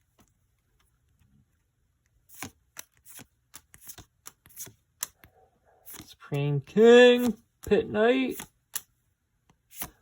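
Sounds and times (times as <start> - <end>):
cards snapping and sliding: 2.2 - 5.2, 5.9 - 6.2, 7.1 - 8.9, 9.5 - 10.0.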